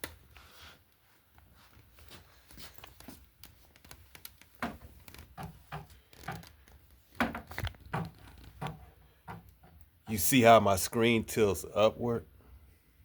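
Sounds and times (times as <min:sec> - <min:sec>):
hands handling equipment: 0:01.3 - 0:09.9.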